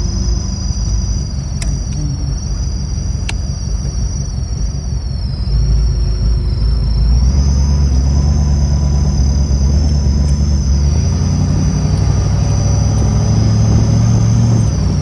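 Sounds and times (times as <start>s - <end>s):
high wavering whine: 0.0s - 15.0s
vehicle engine rumble: 0.0s - 15.0s
sharp clicks: 1.5s - 2.1s, 3.2s - 3.5s.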